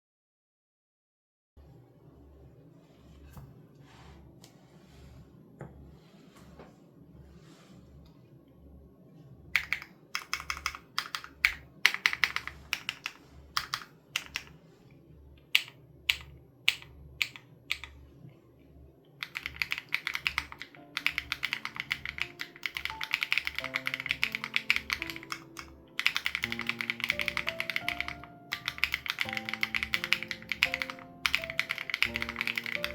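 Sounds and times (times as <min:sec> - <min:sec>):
mechanical keyboard typing: 0:09.6 - 0:14.6, 0:15.4 - 0:18.0, 0:19.2 - 0:32.9.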